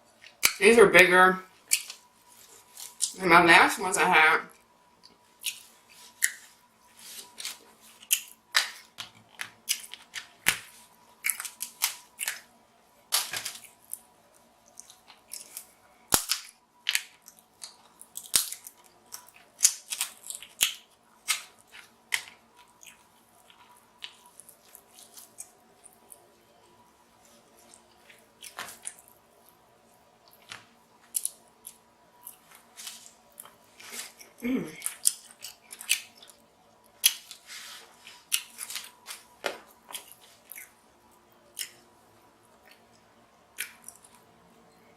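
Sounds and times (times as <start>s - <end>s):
crab shell cracking: 14.8s - 21.5s
chewing: 17.1s - 26.2s, 30.2s - 36.4s, 37.0s - 39.2s, 39.8s - 40.8s.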